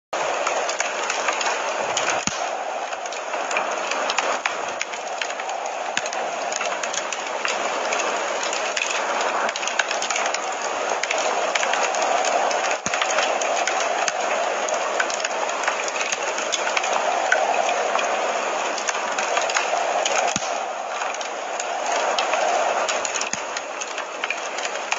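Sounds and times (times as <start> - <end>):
wood fire crackling: 0.2 - 24.9.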